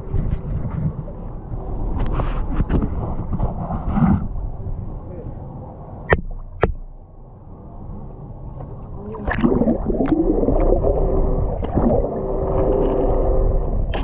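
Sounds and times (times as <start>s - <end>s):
steady hum: 5.8s - 14.0s
water splashing against a boat: 8.5s - 14.0s.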